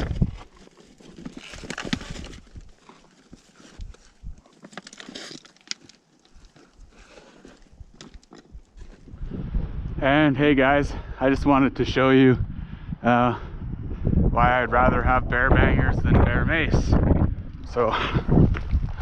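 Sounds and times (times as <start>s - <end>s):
crunching footsteps: 0.0s - 9.2s.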